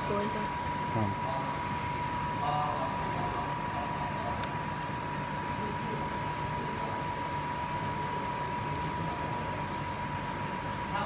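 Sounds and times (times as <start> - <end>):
thin high whine: 0.0 - 11.0.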